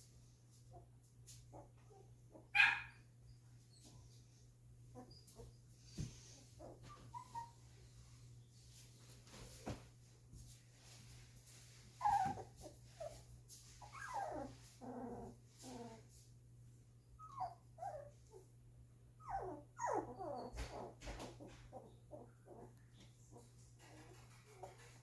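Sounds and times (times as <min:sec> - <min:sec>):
puppies whining: 0:04.9 - 0:07.6, 0:12.0 - 0:13.2, 0:13.8 - 0:16.1, 0:17.0 - 0:18.4, 0:19.2 - 0:24.7.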